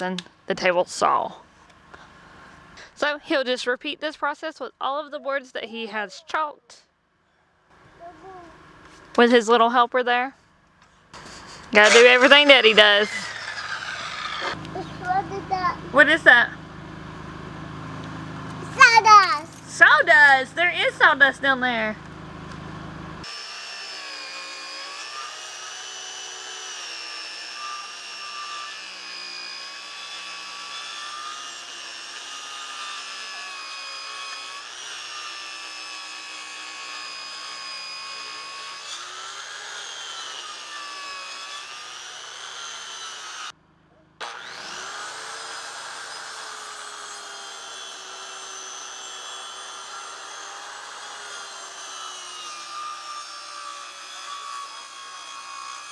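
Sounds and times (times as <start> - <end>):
table saw ripping a board: 11.2 - 15.2, 18.6 - 19.8, 23.2 - 43.5, 44.2 - 55.9.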